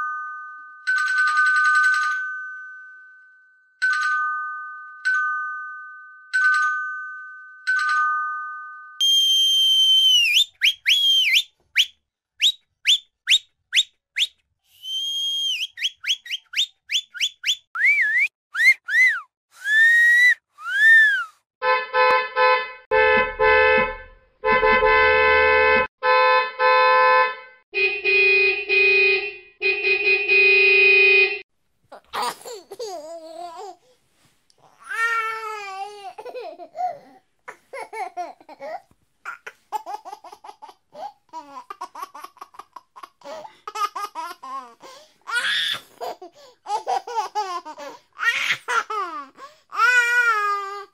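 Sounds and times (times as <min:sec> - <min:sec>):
whistles: 0:09.0 - 0:21.4.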